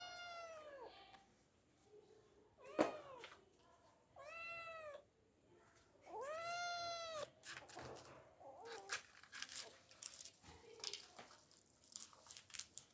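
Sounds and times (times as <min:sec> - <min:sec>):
cat meowing: 0:00.0 - 0:00.9, 0:04.2 - 0:05.0, 0:06.1 - 0:07.3.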